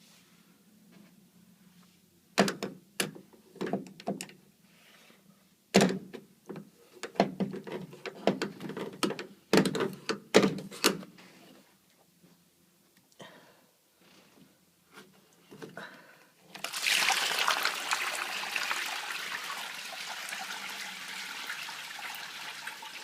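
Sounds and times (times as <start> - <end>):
hard parts knocking and rattling: 5.8 - 11.0.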